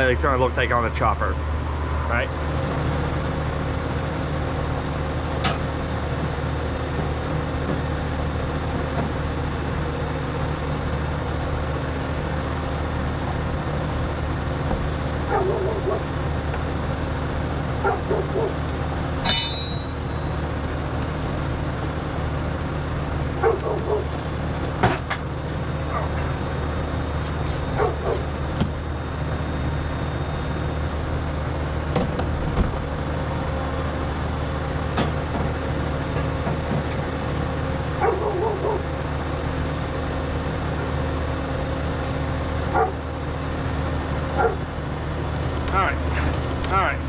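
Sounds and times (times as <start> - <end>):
motor hum: 1.4 - 47.0
metal knocks and clanks: 5.4 - 5.8, 19.2 - 20.1.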